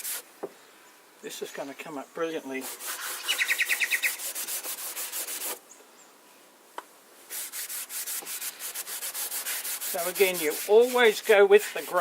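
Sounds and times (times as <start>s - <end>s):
steel wool scrubbing wood: 0.0s - 0.2s, 2.5s - 5.6s, 7.3s - 12.0s.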